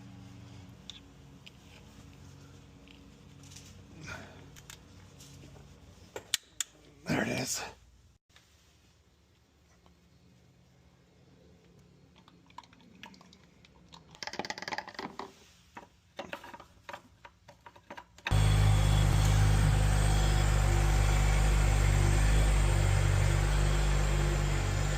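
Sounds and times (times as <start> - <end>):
clicks and rattles of tools: 4.5 - 4.9, 14.1 - 18.3
car engine idling loudly: 18.3 - 24.9.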